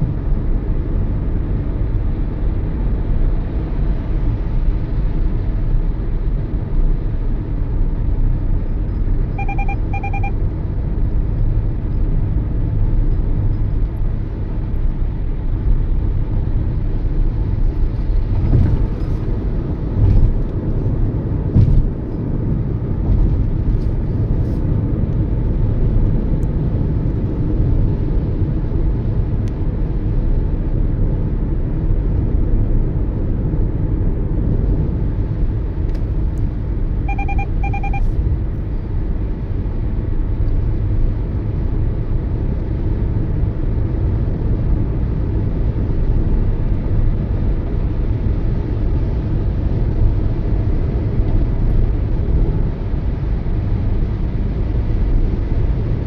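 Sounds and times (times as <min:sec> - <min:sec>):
car road and engine rumble: 0:00.0 - 0:56.0
short beeps: 0:09.3 - 0:10.4, 0:37.0 - 0:38.2.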